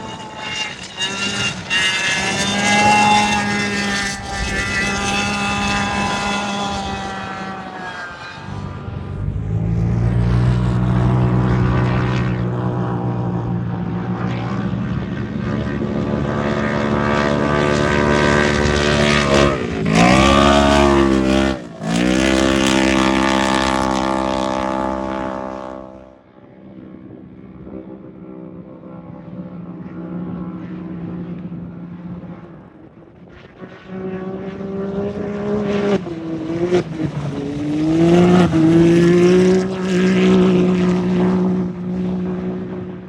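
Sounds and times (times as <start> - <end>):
race engine revving hard: 0.0 - 12.4, 16.9 - 26.1, 34.3 - 41.9.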